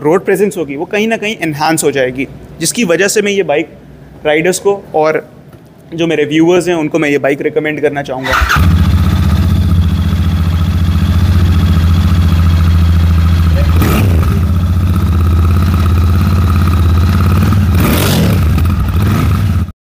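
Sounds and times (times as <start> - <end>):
motorcycle engine idling: 8.3 - 19.7.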